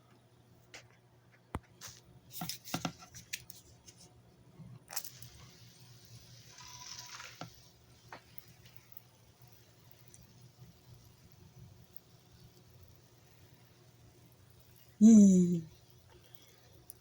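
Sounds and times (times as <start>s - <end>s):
water spraying hiss: 4.9s - 15.0s.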